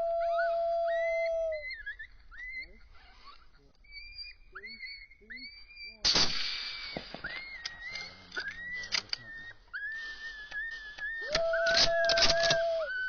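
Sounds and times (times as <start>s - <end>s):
rifle shots echoing: 6.1s - 8.0s.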